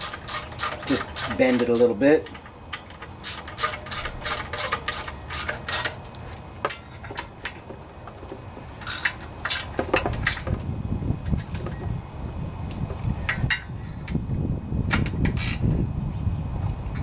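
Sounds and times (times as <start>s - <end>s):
ratchet wrench clicking: 0.0s - 7.6s, 8.8s - 10.5s, 14.9s - 15.6s
low rumble of handling: 0.0s - 17.0s.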